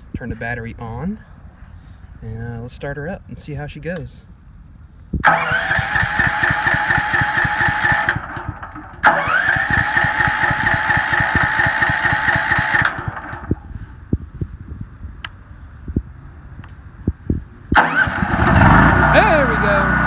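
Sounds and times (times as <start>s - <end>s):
generator starter cranking: 5.2s - 13.8s, 17.7s - 20.0s
low thumps: 15.8s - 17.8s
clicks: 16.6s - 16.8s.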